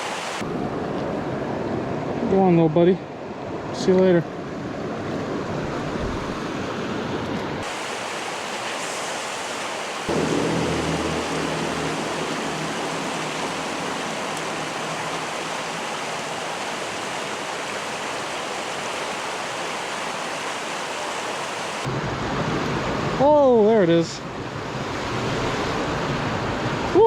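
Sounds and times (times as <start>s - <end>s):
creek running over rocks: 0.0s - 0.4s, 7.6s - 21.9s.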